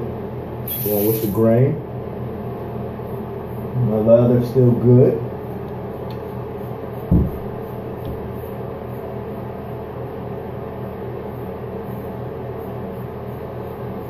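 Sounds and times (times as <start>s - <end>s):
steady low hum: 0.0s - 14.0s
low thump: 7.1s - 8.3s.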